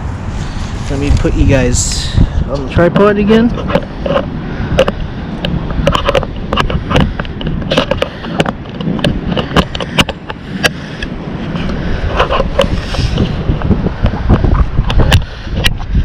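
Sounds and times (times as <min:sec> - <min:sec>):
steady low rumble: 0:00.0 - 0:16.0
camera handling clicks and knocks: 0:02.9 - 0:10.8.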